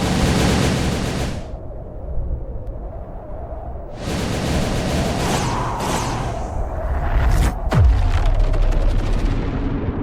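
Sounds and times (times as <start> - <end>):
loud explosion blast: 7.7 - 10.0.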